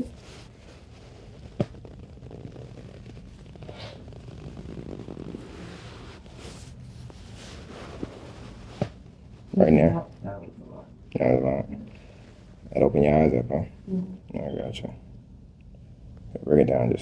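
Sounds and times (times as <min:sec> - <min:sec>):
hands rubbing on back: 0:00.0 - 0:09.6.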